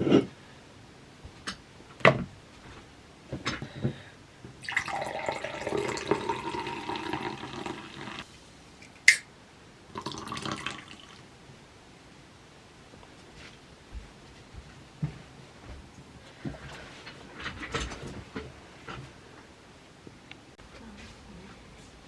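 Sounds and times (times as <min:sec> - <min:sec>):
water pouring: 0:04.6 - 0:08.2, 0:09.9 - 0:11.2.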